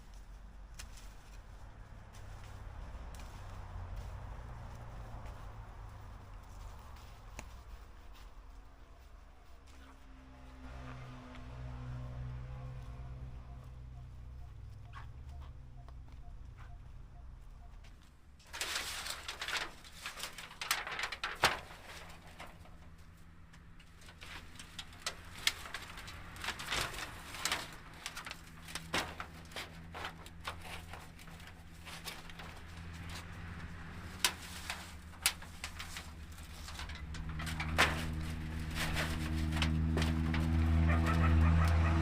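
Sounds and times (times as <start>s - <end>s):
sharp knocks and scrapes: 23.8s - 42.0s.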